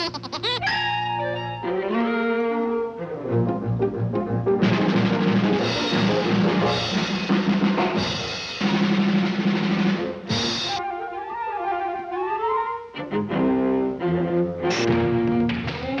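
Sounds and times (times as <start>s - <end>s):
loud drum rolls: 4.6s - 10.8s
low drum beats: 4.6s - 10.8s.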